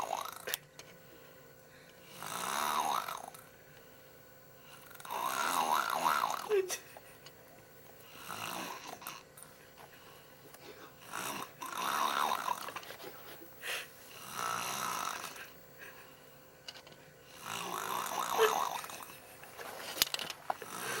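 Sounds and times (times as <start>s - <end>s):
girl snoring loudly: 0.0s - 0.6s, 2.1s - 3.4s, 4.7s - 6.8s, 8.1s - 9.3s, 11.0s - 12.8s, 13.7s - 15.5s, 17.3s - 19.1s, 20.6s - 21.0s.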